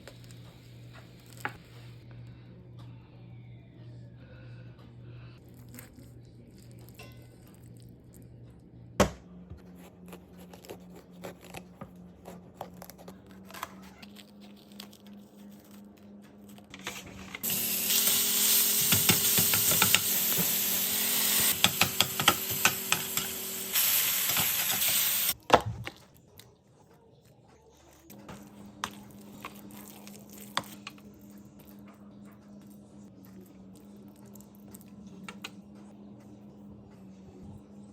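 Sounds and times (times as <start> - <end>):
low steady hum: 0.0 - 18.2
food sizzling in a pan: 17.4 - 25.4
utensils tapping and clicking: 18.7 - 20.5, 21.5 - 23.4.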